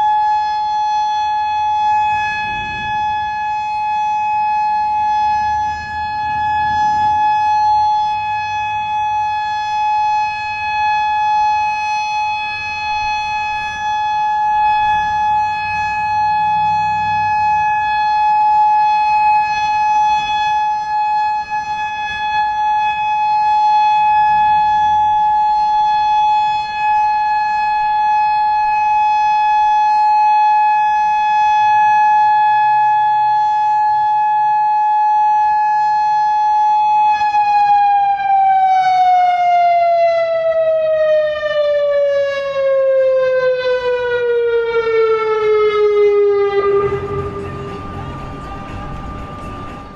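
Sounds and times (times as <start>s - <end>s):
warning siren steady tone: 0.0s - 49.9s.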